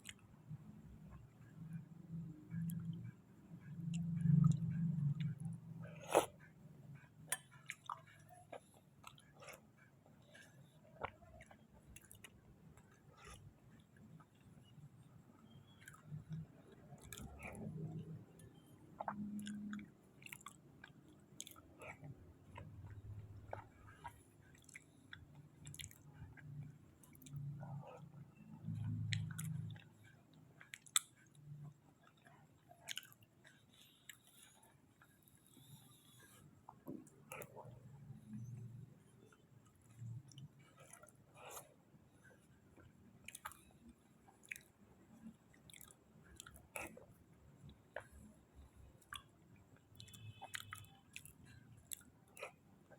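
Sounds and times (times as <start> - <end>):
soft wet chewing: 0.0 - 52.9
low hum: 1.2 - 5.9
mouth clicks and smacks: 15.4 - 34.4, 42.8 - 48.3, 49.0 - 52.9.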